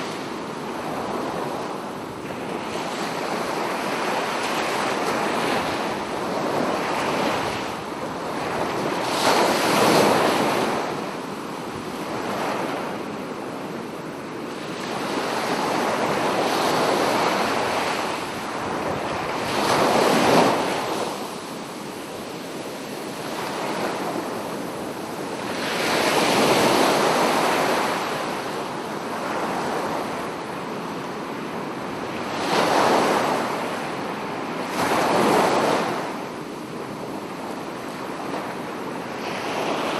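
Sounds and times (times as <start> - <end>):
ocean waves breaking: 14.0 - 36.2.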